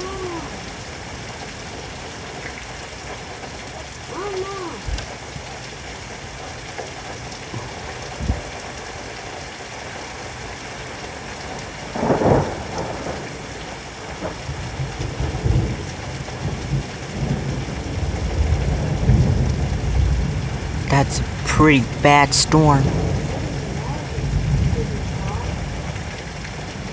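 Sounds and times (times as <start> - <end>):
heavy rain falling: 0.0 - 26.9
low thunder rumbling: 12.0 - 13.3.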